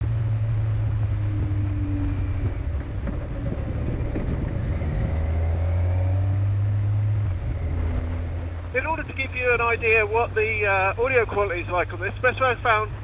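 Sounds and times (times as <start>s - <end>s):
motorcycle engine hum: 0.0s - 13.0s.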